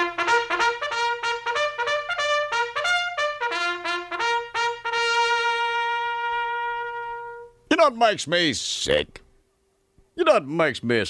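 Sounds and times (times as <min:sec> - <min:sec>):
trumpet playing short notes: 0:00.0 - 0:07.6.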